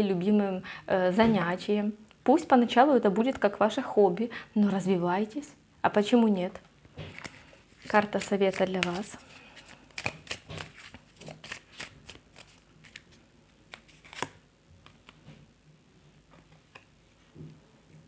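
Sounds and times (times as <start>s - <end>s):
cards being shuffled: 7.0s - 15.2s.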